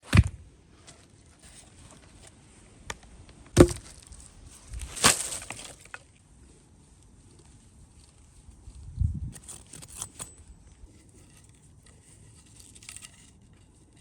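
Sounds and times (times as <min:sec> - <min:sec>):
blade chopping into wood: 0:00.0 - 0:00.4, 0:03.6 - 0:04.0.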